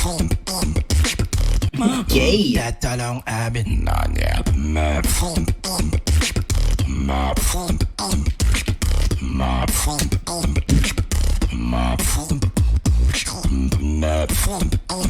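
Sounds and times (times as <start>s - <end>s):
person beatboxing: 0.0s - 2.8s, 4.4s - 15.0s
hummed vocal lines: 9.1s - 12.6s.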